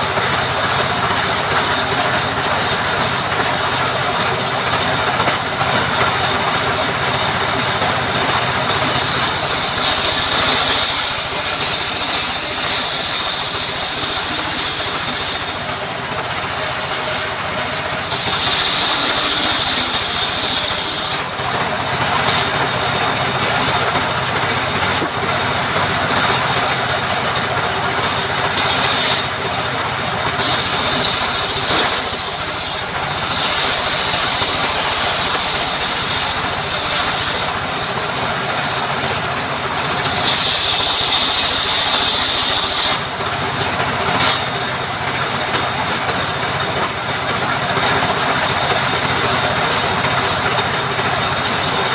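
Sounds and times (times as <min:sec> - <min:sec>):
saw cutting timber: 0:04.7 - 0:23.8, 0:28.2 - 0:43.2.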